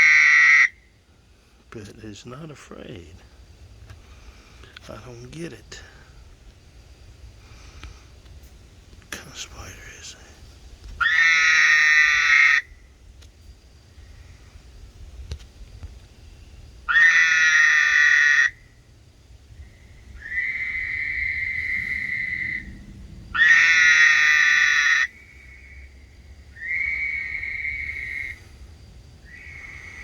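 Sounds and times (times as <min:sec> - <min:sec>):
whistle-like frog calls: 0:00.0 - 0:00.9, 0:11.0 - 0:12.9, 0:16.9 - 0:18.8, 0:19.6 - 0:28.4, 0:29.2 - 0:30.0
harsh frog calls: 0:00.0 - 0:30.0.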